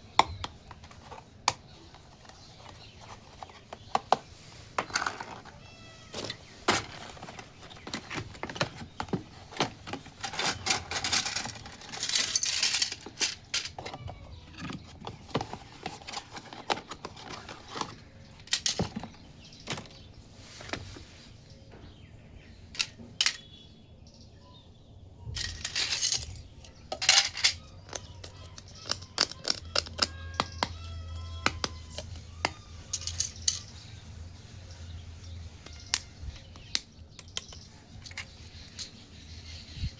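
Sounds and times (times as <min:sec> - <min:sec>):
plastic toy pieces clicking: 0:10.2 - 0:14.1, 0:25.4 - 0:33.7.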